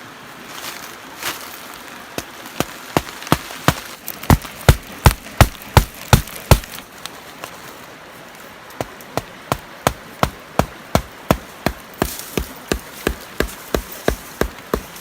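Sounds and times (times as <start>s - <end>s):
sharp chopping strikes: 2.2s - 6.8s, 8.8s - 15.0s.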